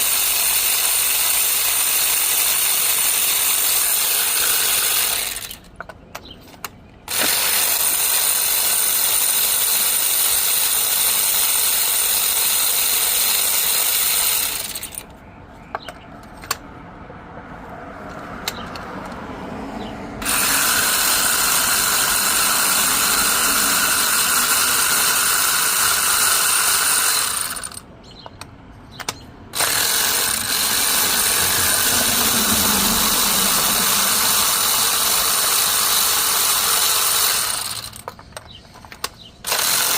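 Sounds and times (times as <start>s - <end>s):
ratchet wrench clicking: 20.2s - 27.8s, 29.0s - 39.9s.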